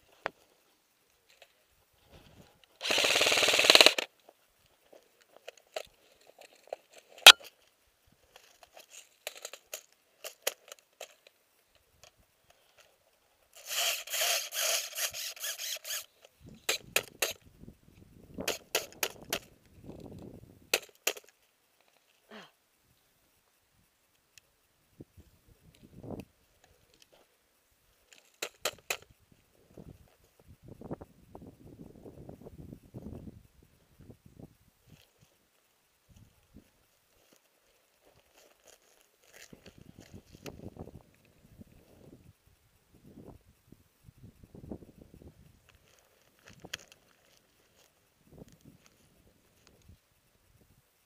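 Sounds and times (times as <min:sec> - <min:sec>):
rustling: 0:00.0 - 0:31.1, 0:32.4 - 0:51.0
sharp clicks: 0:02.6 - 0:04.3, 0:13.5 - 0:22.3, 0:23.0 - 0:27.2, 0:28.0 - 0:31.4
airsoft gun firing bursts: 0:02.8 - 0:04.1.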